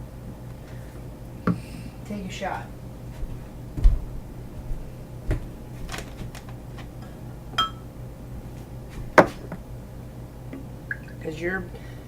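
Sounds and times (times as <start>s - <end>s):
short ringing clink: 7.6s - 7.8s.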